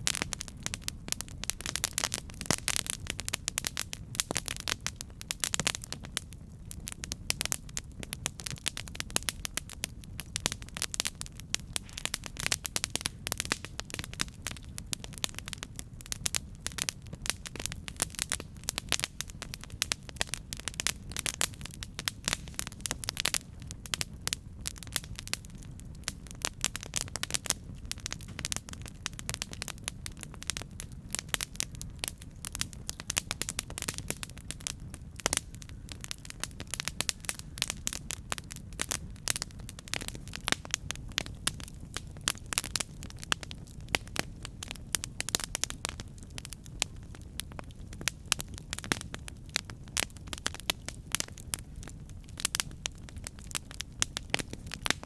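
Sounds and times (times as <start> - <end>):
burning wood crackling and popping: 0.0 - 55.0
low rumble of flames: 0.0 - 55.0.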